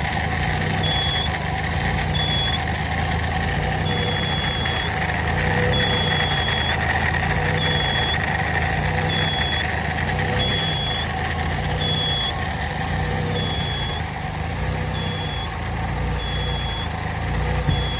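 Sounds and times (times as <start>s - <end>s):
small engine surging: 0.0s - 17.9s
high-pitched pulsing whistle: 0.8s - 1.3s, 2.1s - 2.7s, 3.8s - 8.4s, 9.0s - 9.7s, 10.3s - 12.4s, 13.2s - 14.1s, 14.9s - 15.6s, 16.2s - 17.0s, 17.6s - 17.9s.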